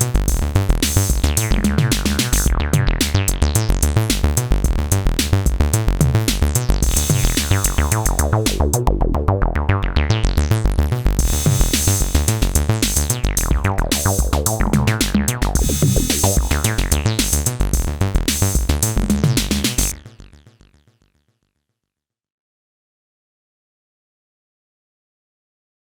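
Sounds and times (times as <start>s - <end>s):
drum-machine beat: 0.0s - 9.0s, 11.2s - 19.9s
synthesizer bassline: 0.0s - 21.2s.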